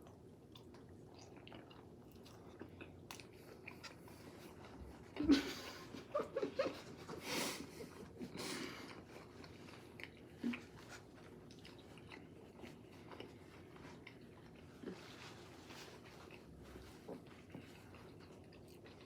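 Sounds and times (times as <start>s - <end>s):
chewing crispy food: 0.0s - 19.0s.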